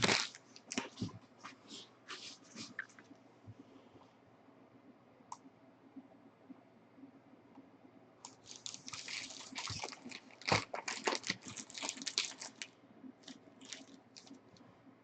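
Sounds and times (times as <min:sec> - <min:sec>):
plastic packaging crinkling and tearing: 0:00.0 - 0:01.1, 0:08.3 - 0:14.5.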